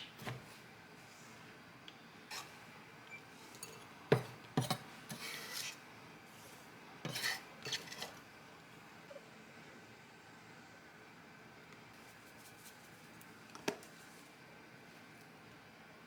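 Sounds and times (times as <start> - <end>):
objects scraping: 6.4 - 8.2.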